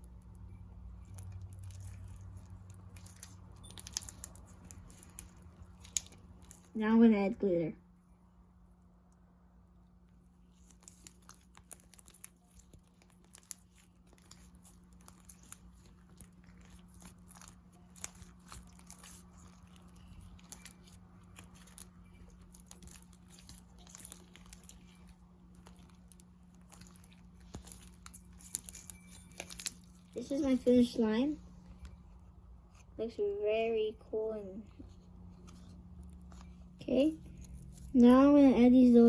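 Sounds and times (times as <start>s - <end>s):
slime kneaded with sticky clicks: 0.0s - 6.8s, 10.1s - 32.0s
faint steady hum: 0.0s - 39.0s.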